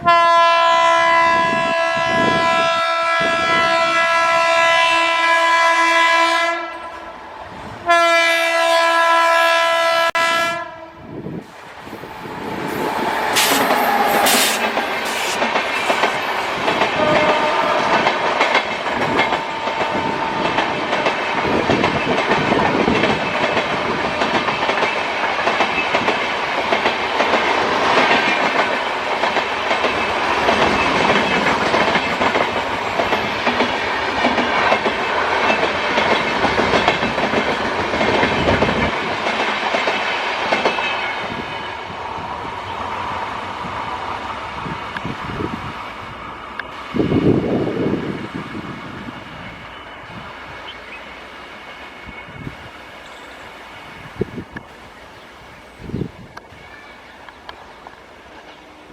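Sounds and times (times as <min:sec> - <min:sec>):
train horn blasts: 0:00.0 - 0:07.1, 0:07.8 - 0:11.2, 0:12.8 - 0:15.4, 0:16.9 - 0:18.3, 0:19.1 - 0:21.6
train wheels clattering: 0:11.9 - 0:41.7.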